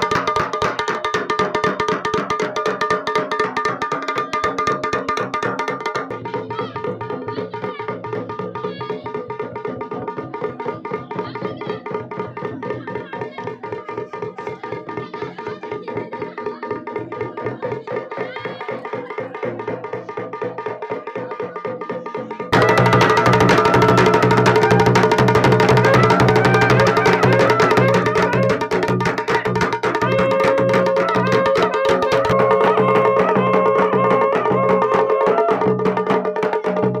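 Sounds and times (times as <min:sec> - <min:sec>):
drums in a rapid beat: 0:00.0 - 0:37.0
steady held tones: 0:22.5 - 0:35.2.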